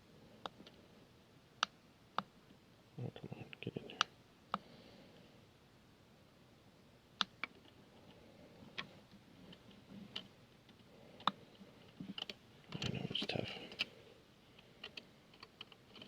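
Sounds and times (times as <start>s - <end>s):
small parts and tools clicking: 14.6s - 16.0s.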